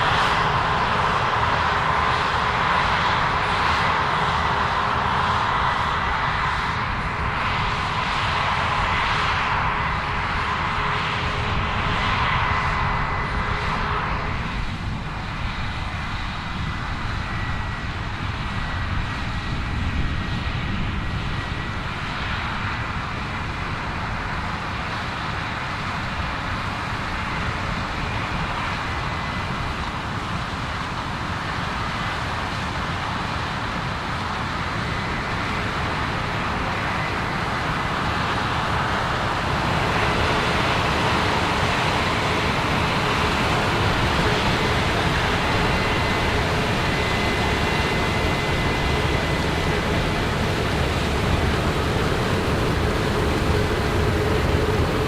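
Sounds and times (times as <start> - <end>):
combine harvester droning: 35.1 - 55.0.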